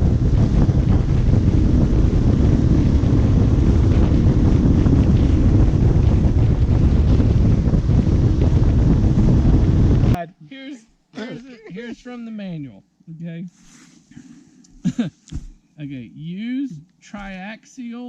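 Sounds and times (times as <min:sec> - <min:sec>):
wind buffeting microphone: 0:00.0 - 0:10.2.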